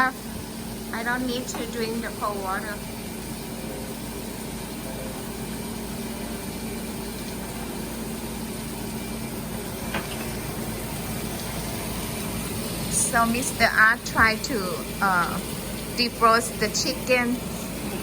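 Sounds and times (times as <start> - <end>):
household appliance humming: 0.0 - 18.0.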